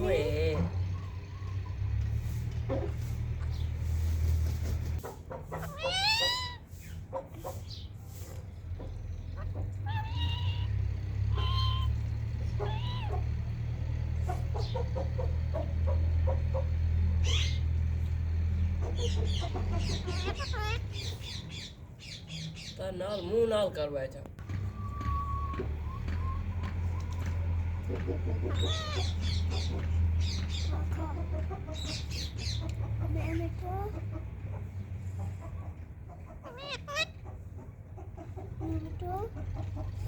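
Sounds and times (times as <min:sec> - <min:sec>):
parrot calling and chattering: 0:05.4 - 0:07.9, 0:08.6 - 0:13.5, 0:14.2 - 0:17.8, 0:18.6 - 0:23.3, 0:28.2 - 0:34.7, 0:36.1 - 0:37.5
parrot screeching: 0:05.6 - 0:06.7, 0:09.4 - 0:12.0, 0:12.6 - 0:13.2, 0:17.2 - 0:17.6, 0:19.3 - 0:21.4, 0:28.5 - 0:29.4, 0:36.4 - 0:37.2.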